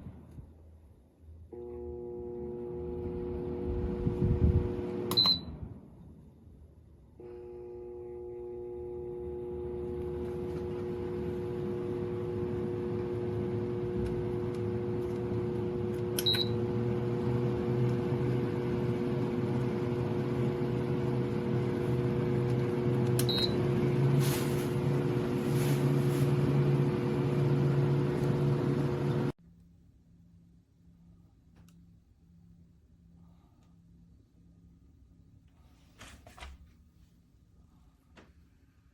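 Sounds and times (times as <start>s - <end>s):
window fan humming: 7.5s - 29.4s.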